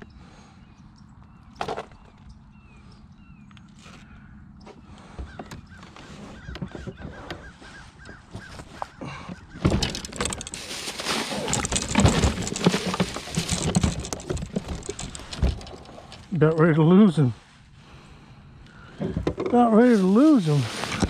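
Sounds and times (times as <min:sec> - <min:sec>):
fish thrashing in a boat: 0:05.0 - 0:16.3.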